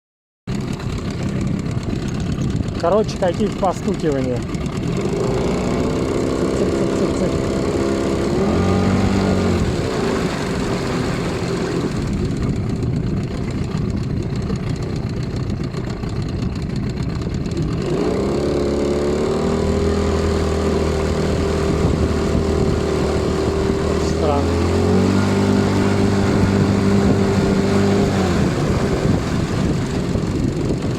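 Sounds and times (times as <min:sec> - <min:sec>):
rapid tapping engine knock: 0:00.5 - 0:05.1, 0:12.2 - 0:17.8
outboard motor running: 0:00.5 - 0:30.9.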